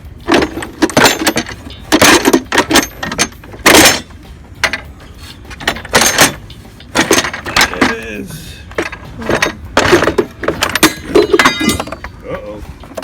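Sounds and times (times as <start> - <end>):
plastic parts scraping and clattering: 0.2 - 8.0, 8.7 - 12.2.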